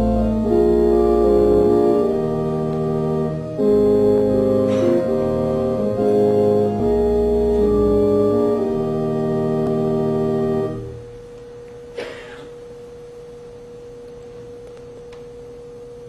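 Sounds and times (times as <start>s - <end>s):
organ playing held chords: 0.0s - 11.2s
steady organ tone: 0.0s - 11.9s.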